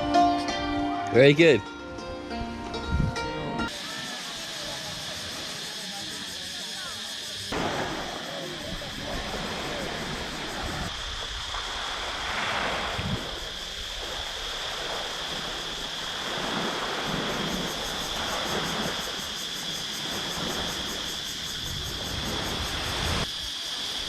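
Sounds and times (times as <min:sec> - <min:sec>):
wind buffeting microphone: 0:02.8 - 0:03.3, 0:07.9 - 0:18.8
sea waves washing onto beach: 0:07.4 - 0:23.3.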